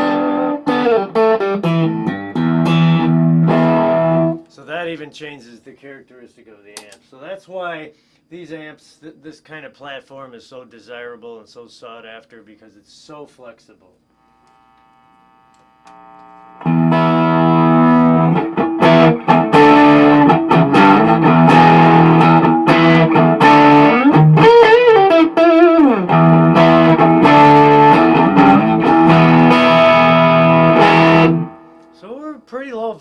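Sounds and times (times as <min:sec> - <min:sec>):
distorted electric guitar: 0:00.0 - 0:04.4, 0:14.3 - 0:31.9.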